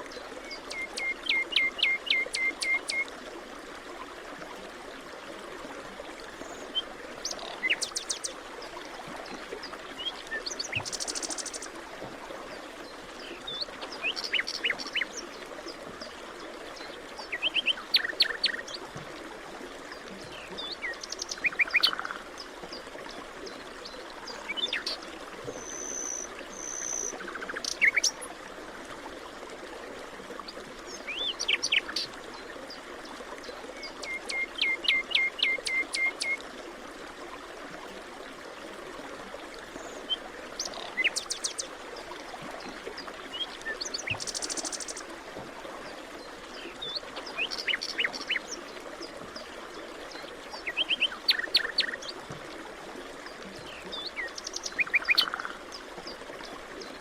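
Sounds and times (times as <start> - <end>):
birds calling and singing: 17.3 - 18.8, 33.8 - 36.4, 50.6 - 52.1, 53.6 - 55.8.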